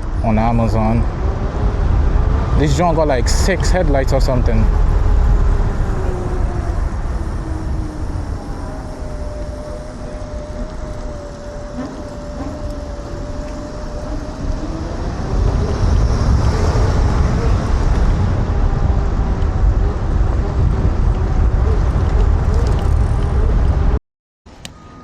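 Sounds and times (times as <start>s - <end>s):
wind rushing over microphone: 0.0s - 24.0s
thin steady whine: 1.8s - 16.0s.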